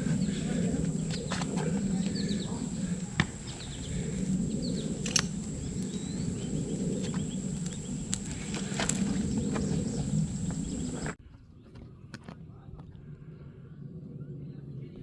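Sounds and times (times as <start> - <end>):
constant low rushing noise: 0.0 - 11.2
faint bird chirps: 0.0 - 11.2
steady high whine: 0.0 - 11.2.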